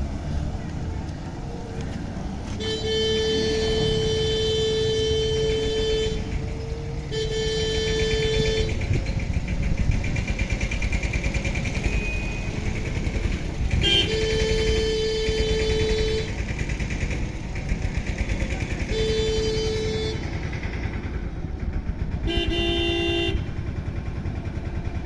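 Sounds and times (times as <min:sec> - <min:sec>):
traffic engines running: 0:00.0 - 0:25.0
vehicle horns honking: 0:02.4 - 0:09.2, 0:11.7 - 0:12.8, 0:13.5 - 0:20.7, 0:22.2 - 0:23.6.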